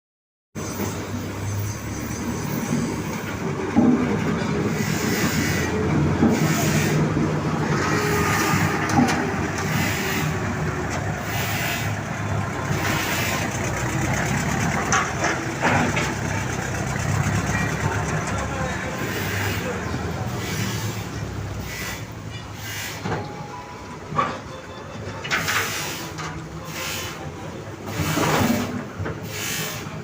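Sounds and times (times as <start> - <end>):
diesel engine running: 0.6 - 30.0
hiss: 4.7 - 5.8, 20.4 - 23.0, 25.5 - 27.3, 27.9 - 30.0
clatter: 12.8 - 18.7.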